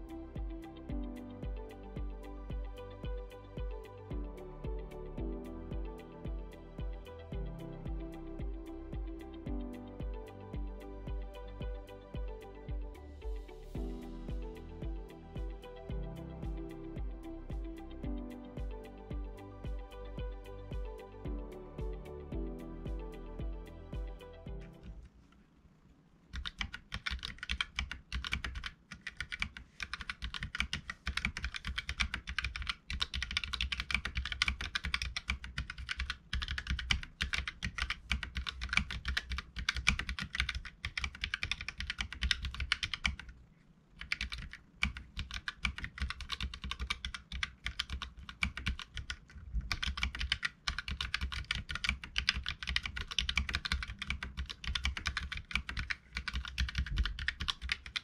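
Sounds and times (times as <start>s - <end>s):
mechanical keyboard typing: 26.3s - 43.4s, 44.0s - 58.0s.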